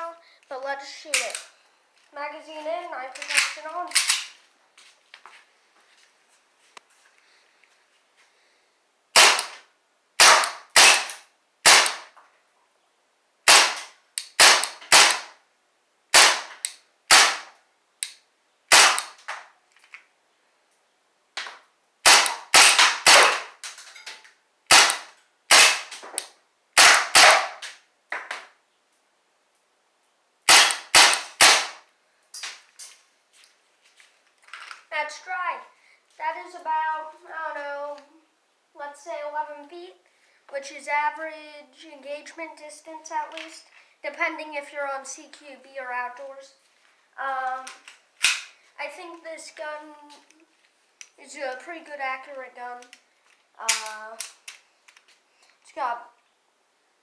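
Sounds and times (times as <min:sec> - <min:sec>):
airsoft pistol shots: 0:09.2 - 0:09.6, 0:10.2 - 0:12.1, 0:13.5 - 0:15.4, 0:16.1 - 0:17.6, 0:18.7 - 0:19.2, 0:22.0 - 0:23.6, 0:24.7 - 0:26.0, 0:26.8 - 0:27.7, 0:30.5 - 0:31.8.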